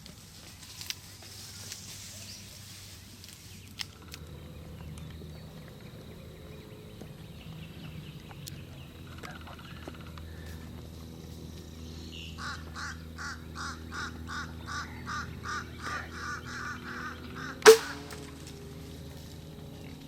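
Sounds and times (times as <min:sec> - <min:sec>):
bird calling: 0:03.5 - 0:18.9
bow shot snap and string twang: 0:17.6 - 0:18.6.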